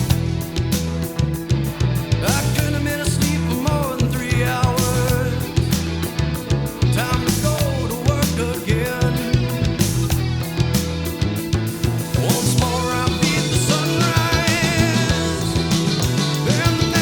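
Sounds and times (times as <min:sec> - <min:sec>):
rock song with singing: 0:00.0 - 0:17.0.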